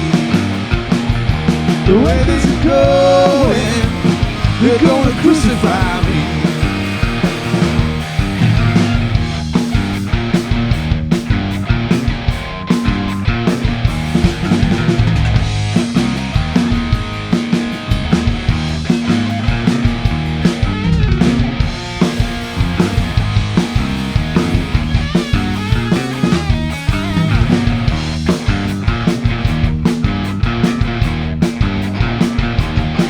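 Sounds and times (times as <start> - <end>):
drum kit beat: 0.0 - 33.0
electric guitar: 0.0 - 33.0.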